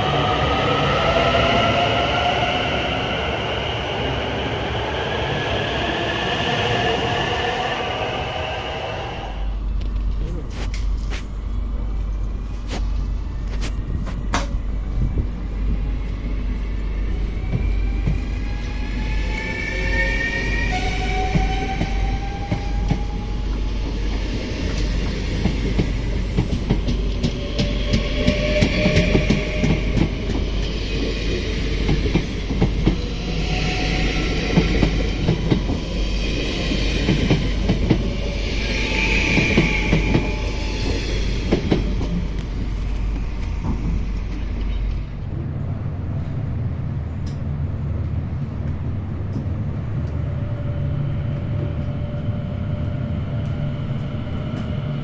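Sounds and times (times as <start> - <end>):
rising whine: 0.0 - 9.8.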